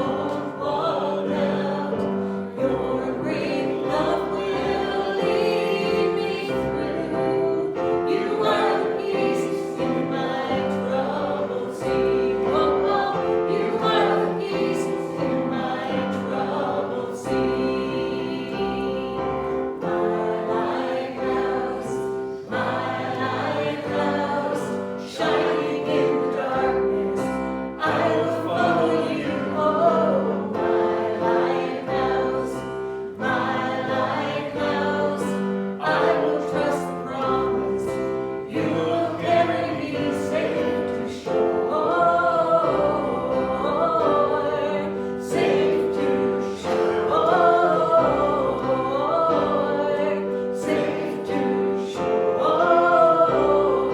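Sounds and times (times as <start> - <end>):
congregation singing a gospel song: 0.0 - 53.9
piano accompaniment: 0.0 - 53.9.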